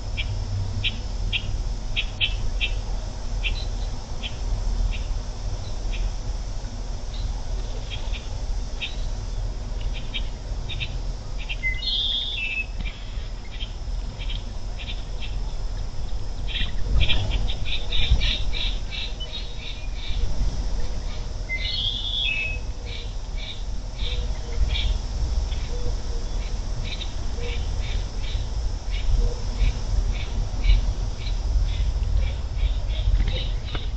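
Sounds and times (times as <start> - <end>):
steady low rumble: 0.0 - 33.9
harsh bird calls: 9.9 - 15.4, 21.5 - 25.0.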